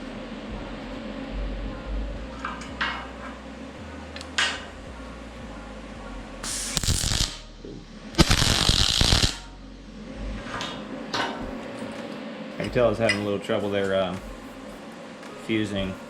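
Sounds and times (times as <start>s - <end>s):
welding arc crackling: 6.4s - 7.5s, 8.2s - 9.4s.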